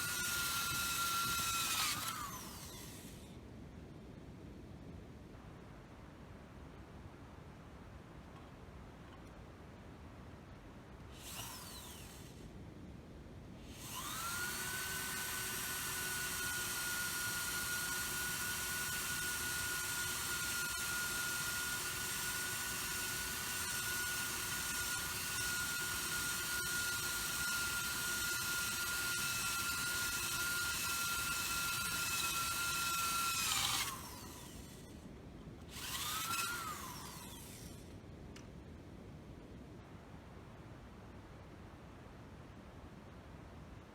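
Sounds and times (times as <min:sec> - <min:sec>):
cordless drill whine: 0:00.0 - 0:03.3, 0:11.1 - 0:12.5, 0:13.7 - 0:35.0, 0:35.6 - 0:38.0.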